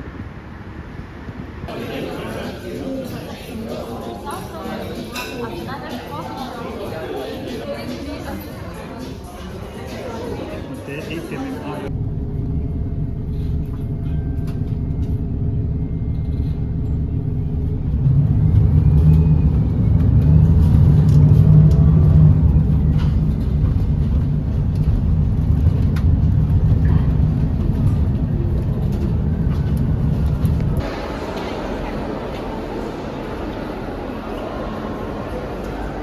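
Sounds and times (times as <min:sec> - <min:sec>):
vehicle rumble: 0:11.8 - 0:36.0.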